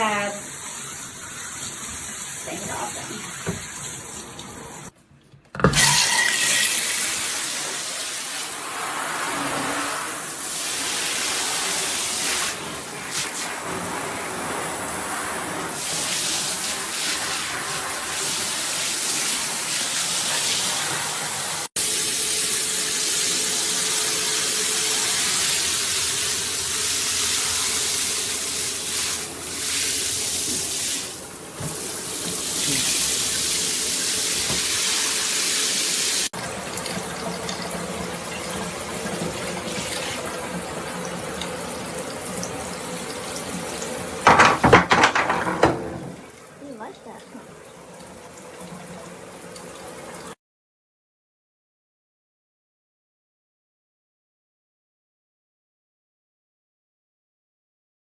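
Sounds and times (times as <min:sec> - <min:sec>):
water spraying from hose: 0:00.0 - 0:04.9, 0:06.6 - 0:44.5.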